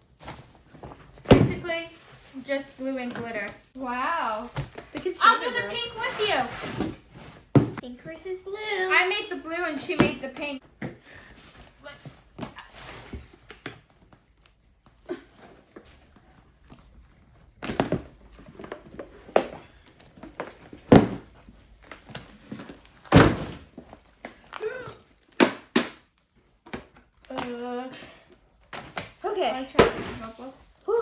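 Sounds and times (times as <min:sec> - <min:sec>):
rustling: 0:00.1 - 0:07.8.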